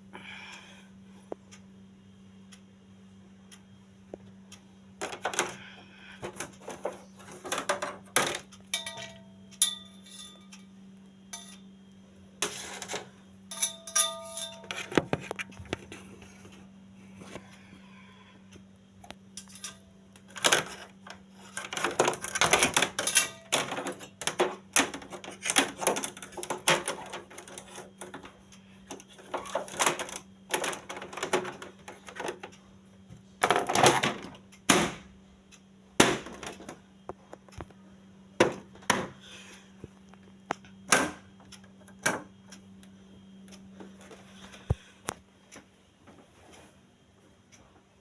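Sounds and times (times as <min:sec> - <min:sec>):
faint low hum: 0:00.0 - 0:48.0
objects being handled: 0:06.2 - 0:10.6.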